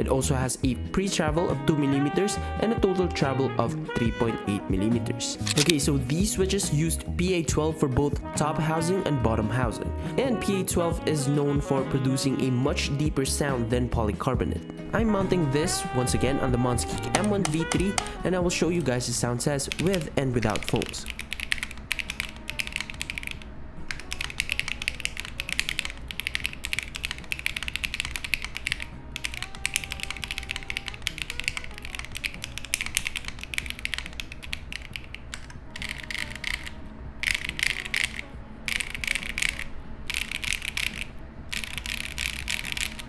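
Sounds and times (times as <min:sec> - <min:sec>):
mechanical keyboard typing: 0:05.4 - 0:05.8, 0:15.7 - 0:43.0.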